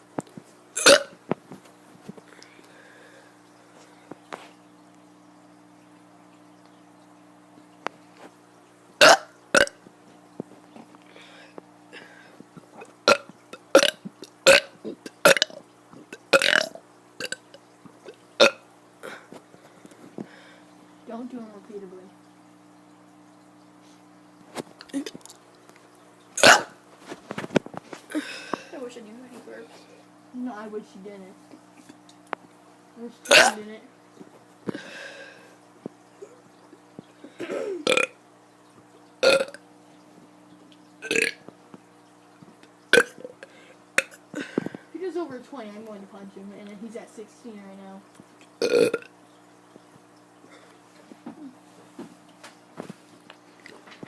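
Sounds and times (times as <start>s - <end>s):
child burping loudly: 0.8s - 1.2s, 9.0s - 9.8s, 13.1s - 15.6s, 16.2s - 17.4s, 18.4s - 19.2s, 26.4s - 26.8s, 33.2s - 33.7s, 37.4s - 38.2s, 39.2s - 39.6s, 41.0s - 41.4s, 42.9s - 43.4s, 48.6s - 49.1s.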